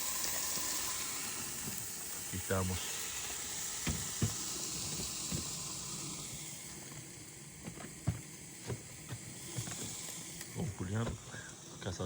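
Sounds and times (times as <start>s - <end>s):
meat sizzling: 0.0s - 10.6s
small knocks and clicks: 3.8s - 5.6s.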